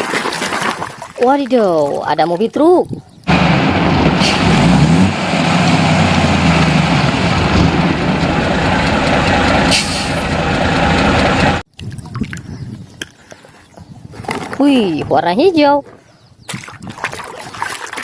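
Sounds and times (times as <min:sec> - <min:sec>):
truck engine running: 0:03.3 - 0:11.6
short air hisses: 0:04.2 - 0:04.6, 0:09.7 - 0:10.2.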